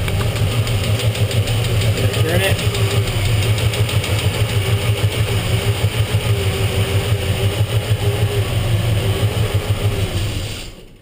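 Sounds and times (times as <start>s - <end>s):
hydraulic lifter ticking: 0.0s - 8.6s
car engine idling: 0.0s - 11.0s.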